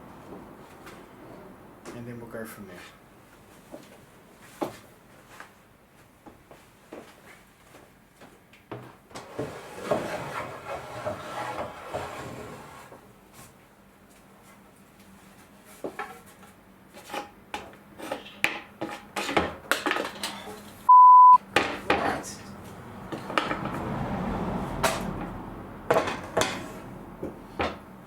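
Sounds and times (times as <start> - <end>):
censor bleep: 20.9 - 21.4.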